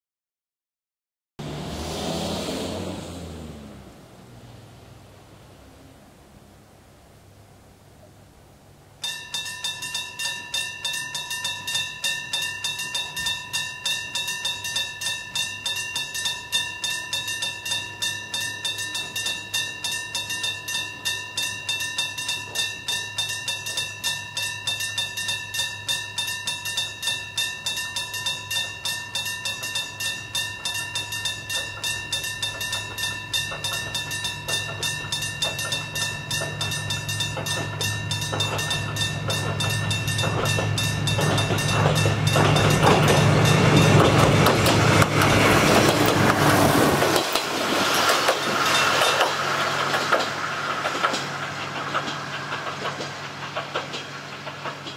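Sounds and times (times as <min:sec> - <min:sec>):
diesel railcar rumble: 0:01.4 - 0:54.9
level crossing bell ringing: 0:09.0 - 0:44.5.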